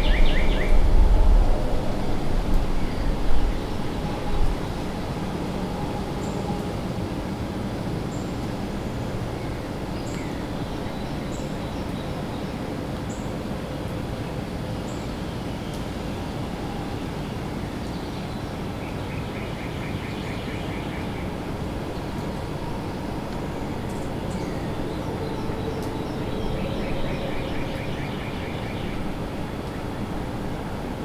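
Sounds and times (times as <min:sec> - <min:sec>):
distant highway traffic rumble: 0:21.0 - 0:31.0.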